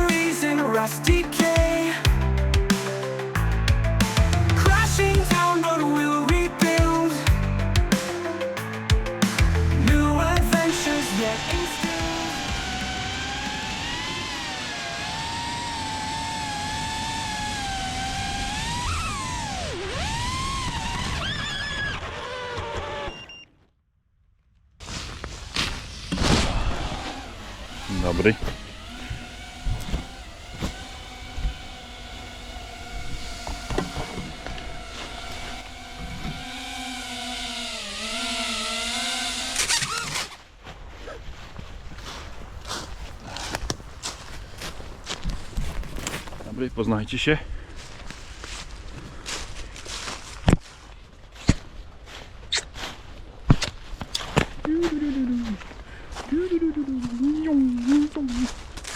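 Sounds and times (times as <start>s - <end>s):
quadcopter motors whining: 0.0s - 23.4s, 25.8s - 40.4s.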